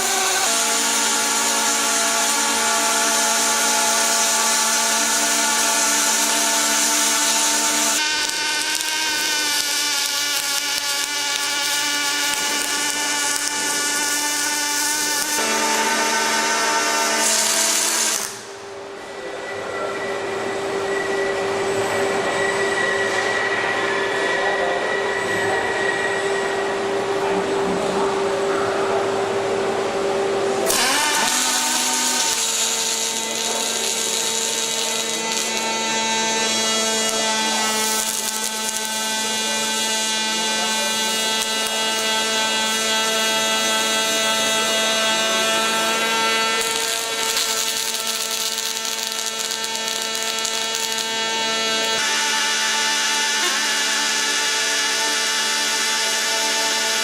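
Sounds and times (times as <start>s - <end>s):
machinery motor whine: 0.0s - 57.0s.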